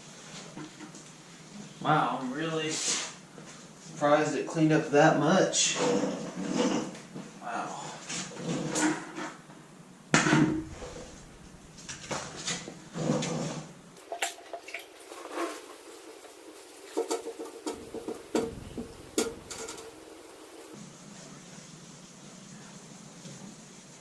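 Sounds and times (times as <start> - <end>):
scraping on metal: 11.9 - 20.8
metal toolbox knocks and clinks: 16.9 - 20.7.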